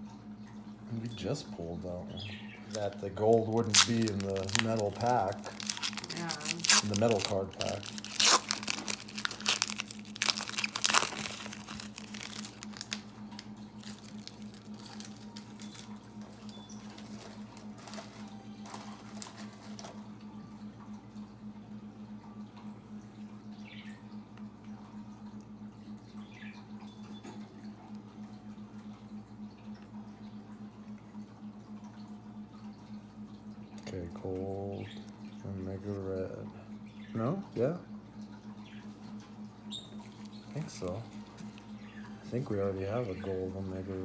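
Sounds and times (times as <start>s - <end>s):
low steady hum: 0.0s - 44.0s
cards being handled: 2.7s - 15.9s
wrapper crinkling: 2.7s - 16.0s, 16.8s - 19.9s.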